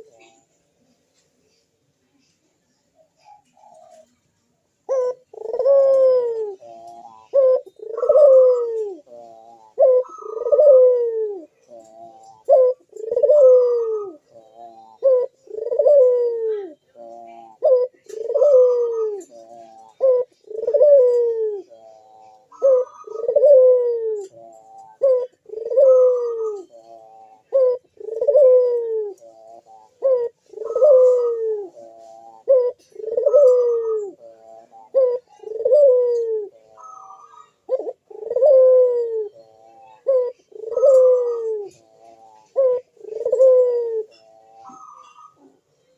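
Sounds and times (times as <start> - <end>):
dove cooing: 0.0 - 0.6, 2.2 - 45.9.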